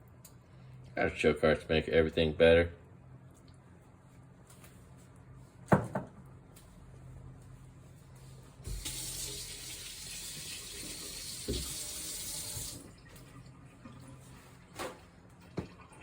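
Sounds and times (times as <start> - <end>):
water running from a tap: 8.7 - 13.2.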